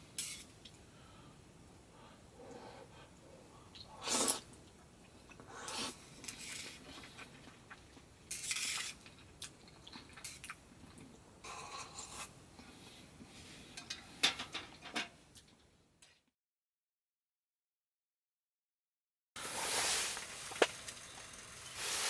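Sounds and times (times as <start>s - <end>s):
camp cookware clinking and scraping: 13.7s - 15.2s.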